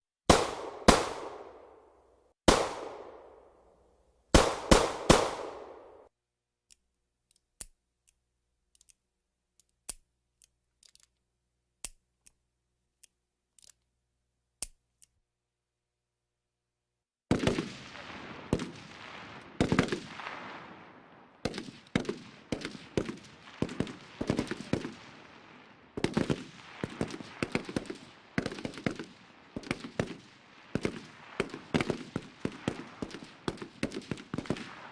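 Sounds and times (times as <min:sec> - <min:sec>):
automatic gunfire bursts: 0:00.3 - 0:03.5, 0:04.4 - 0:06.1, 0:18.5 - 0:34.9
single gunshots with echo: 0:00.3 - 0:03.7, 0:04.4 - 0:06.1, 0:17.3 - 0:34.9.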